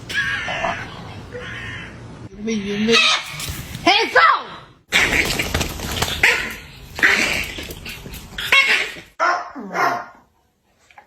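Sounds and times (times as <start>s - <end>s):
dog barking: 8.7s - 10.2s.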